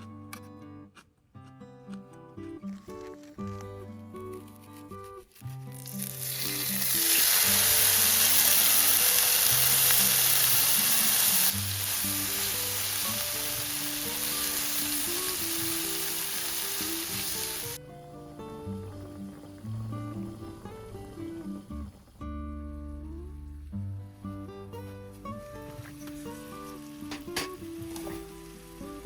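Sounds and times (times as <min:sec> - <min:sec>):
food sizzling in a hot pan: 0:05.5 - 0:17.8, 0:24.8 - 0:29.0.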